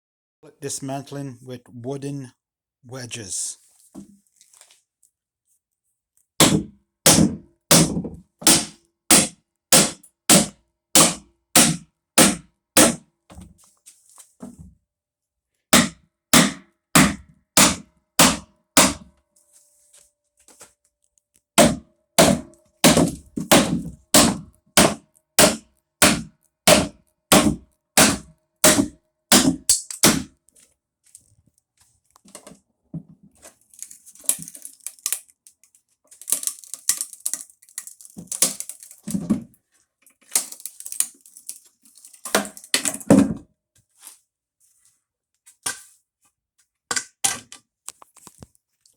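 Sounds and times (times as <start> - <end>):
hammer striking wooden wedges: 6.4 - 13.0, 15.8 - 19.1, 21.6 - 30.3.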